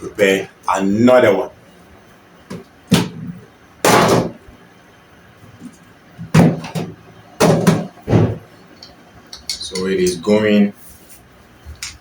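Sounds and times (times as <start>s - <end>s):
door knocks and thuds: 6.3s - 8.5s.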